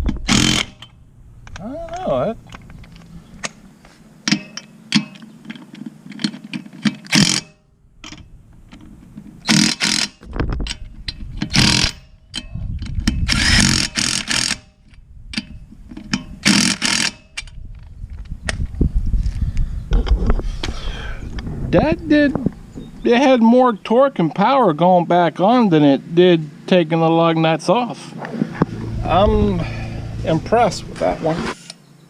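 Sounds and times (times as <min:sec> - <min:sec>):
impact wrench hammering: 0:00.0 - 0:01.0, 0:04.2 - 0:05.3.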